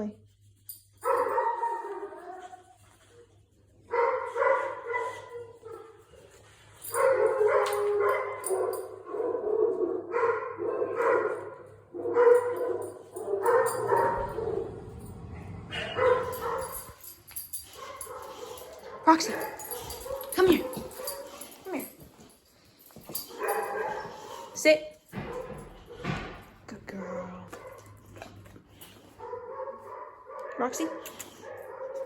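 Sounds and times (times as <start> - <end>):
dogs barking and yipping: 1.0 - 3.0, 3.8 - 26.4, 27.2 - 32.0.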